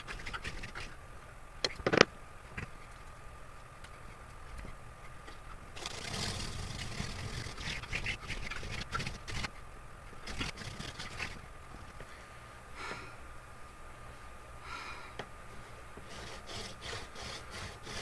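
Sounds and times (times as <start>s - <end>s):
wooden spindle grinding in notch: 5.8s - 11.5s, 16.0s - 18.0s.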